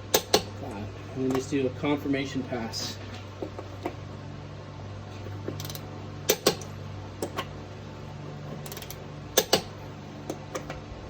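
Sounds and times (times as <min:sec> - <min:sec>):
torque wrench clicking: 0:05.5 - 0:07.5, 0:08.6 - 0:10.8.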